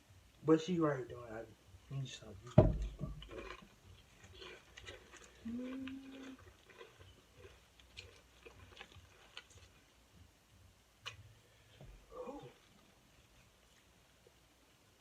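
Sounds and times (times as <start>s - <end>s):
soft chewing with clicks: 3.2s - 10.3s, 11.0s - 11.3s
person humming mm: 5.4s - 6.5s, 12.1s - 12.6s.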